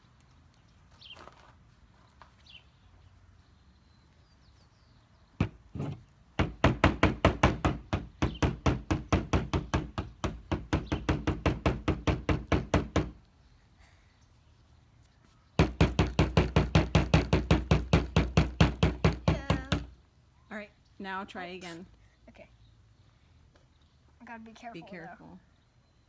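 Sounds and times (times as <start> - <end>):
knocks on a hard surface: 5.4 - 13.2, 15.6 - 19.9.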